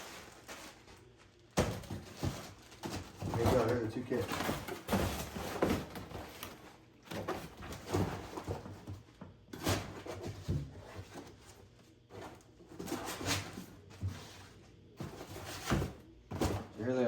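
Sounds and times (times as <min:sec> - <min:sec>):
packages rustling: 0:00.0 - 0:17.0.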